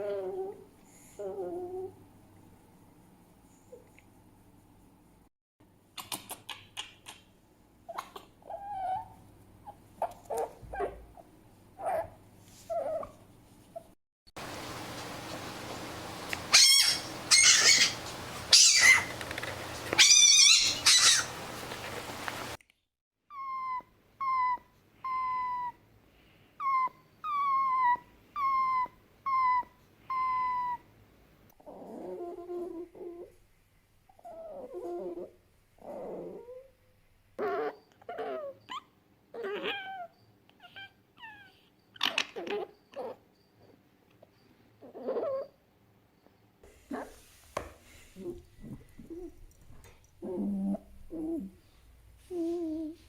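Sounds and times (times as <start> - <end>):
fox whining calls: 16.4 - 19.2, 19.8 - 22.1
fox chirps and yips: 16.5 - 19.2, 19.9 - 21.4, 26.6 - 30.8, 37.4 - 43.4
fox squeaky whine: 16.5 - 19.2, 19.9 - 21.4, 37.4 - 45.6.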